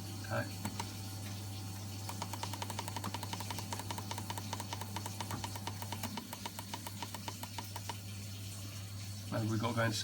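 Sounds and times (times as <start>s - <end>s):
rapid mechanical clicking: 2.1s - 8.0s.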